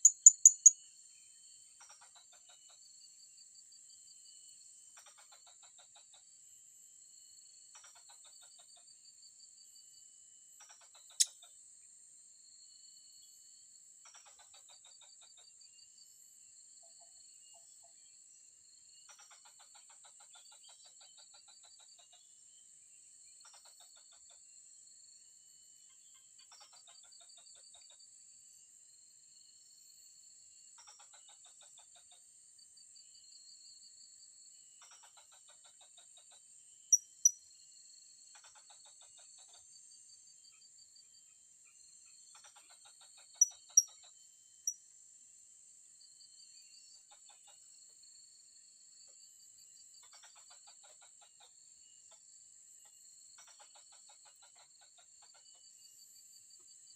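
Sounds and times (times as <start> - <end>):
rasping pulsed calls: 0.0 - 0.7.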